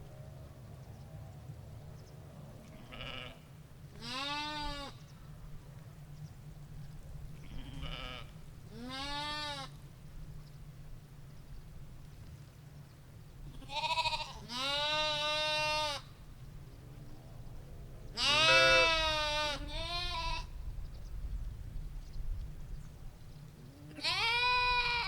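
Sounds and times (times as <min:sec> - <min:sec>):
sheep bleating: 0:02.8 - 0:03.4, 0:04.0 - 0:04.9, 0:07.5 - 0:09.7, 0:13.6 - 0:16.0, 0:18.2 - 0:20.5, 0:23.9 - 0:25.0.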